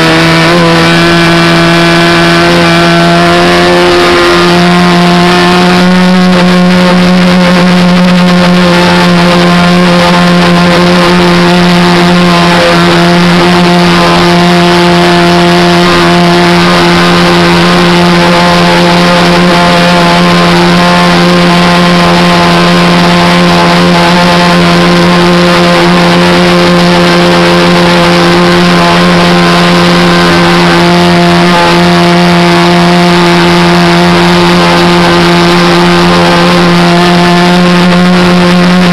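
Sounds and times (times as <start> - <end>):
model airplane engine running: 0.0 - 38.9.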